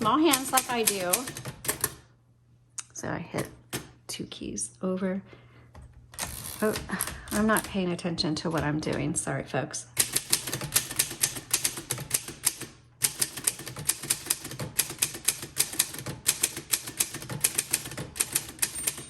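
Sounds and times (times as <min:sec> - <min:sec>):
manual typewriter typing: 0:00.0 - 0:02.0, 0:06.2 - 0:09.2, 0:10.0 - 0:19.0.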